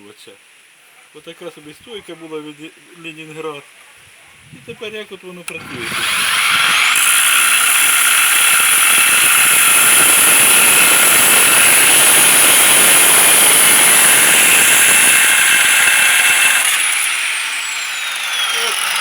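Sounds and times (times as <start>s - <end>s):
angle grinder whining: 5.5s - 19.0s.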